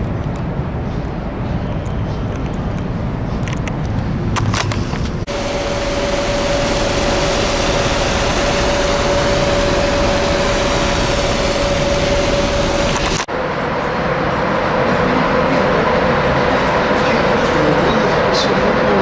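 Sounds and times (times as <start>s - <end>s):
vehicle running with whine: 4.3s - 19.0s.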